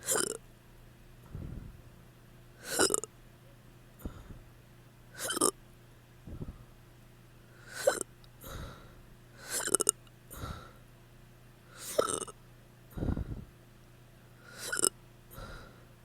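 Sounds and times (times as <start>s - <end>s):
person hiccuping: 0.0s - 0.4s, 2.6s - 3.1s, 5.2s - 5.5s, 7.8s - 8.1s, 9.5s - 10.0s, 11.8s - 12.4s, 14.6s - 14.9s
soft catch of breath: 1.3s - 1.8s, 4.0s - 4.5s, 6.3s - 6.7s, 7.6s - 9.6s, 10.3s - 10.8s, 12.9s - 13.5s, 14.4s - 15.9s.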